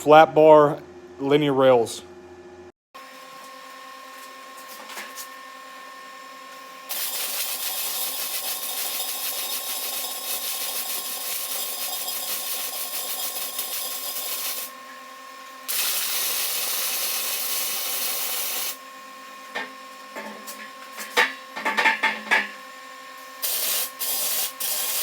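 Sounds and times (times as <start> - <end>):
arc welding hiss: 6.9 - 14.7, 15.7 - 18.8, 23.4 - 25.0.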